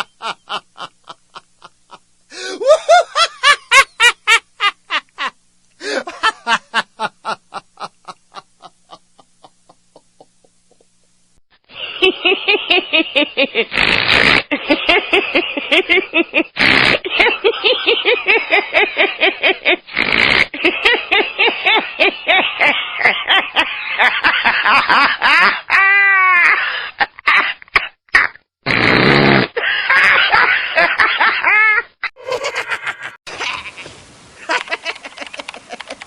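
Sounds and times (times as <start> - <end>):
people laughing: 0.0 - 11.0, 14.5 - 19.8, 29.6 - 33.6, 34.5 - 36.0
squealing laugh: 0.0 - 11.0, 11.8 - 36.0.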